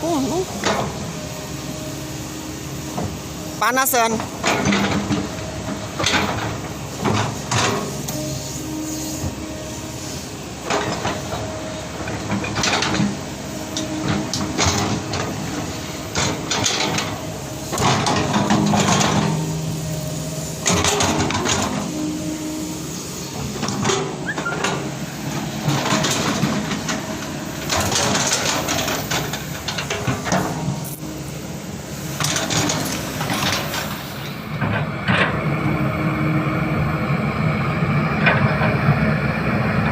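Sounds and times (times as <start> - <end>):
diesel engine drone: 0.0 - 39.9.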